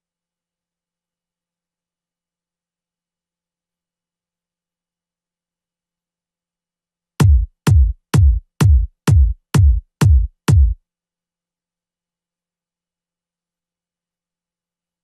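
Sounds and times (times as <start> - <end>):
electronic kick drum beats: 7.2 - 10.8.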